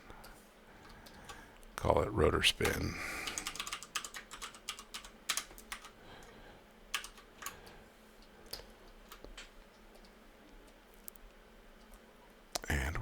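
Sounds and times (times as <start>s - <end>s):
computer keyboard clicks: 0.2s - 1.4s, 2.6s - 6.3s, 6.9s - 7.8s, 8.4s - 11.2s.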